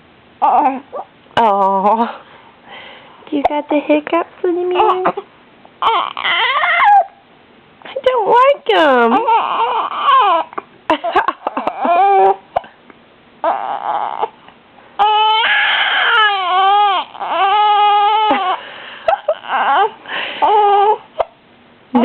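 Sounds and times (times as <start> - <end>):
baby crying: 5.8 - 7.2, 9.1 - 10.6, 11.5 - 12.7, 13.4 - 14.4, 15.0 - 21.4.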